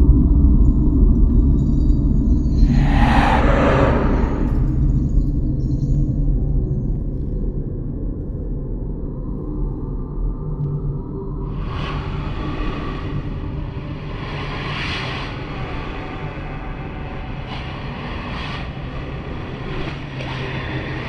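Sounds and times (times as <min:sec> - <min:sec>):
deep rumble: 0:00.0 - 0:18.1.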